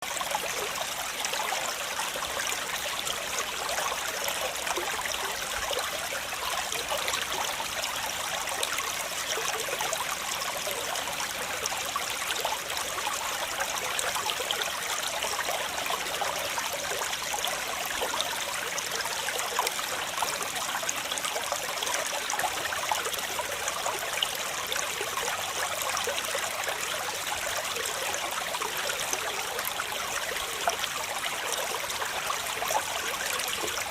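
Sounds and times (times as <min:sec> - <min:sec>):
waterfall over rocks: 0:00.1 - 0:33.9.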